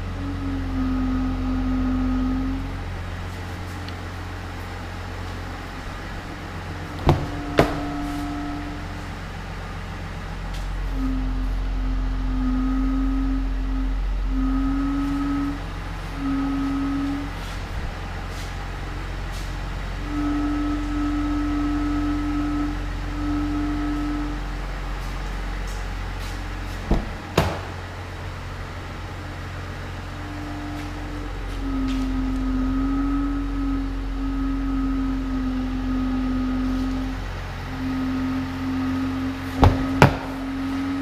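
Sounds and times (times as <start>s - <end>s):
diesel engine idling: 0.0s - 41.0s
humming tone: 0.0s - 41.0s
sharp knocks: 7.0s - 8.1s, 26.9s - 27.8s, 39.6s - 40.4s.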